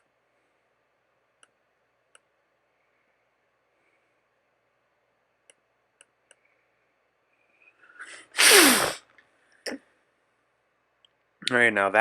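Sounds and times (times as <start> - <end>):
sniff: 7.9 - 9.1
person sneezing: 8.0 - 9.0
short in-breath: 8.0 - 9.0.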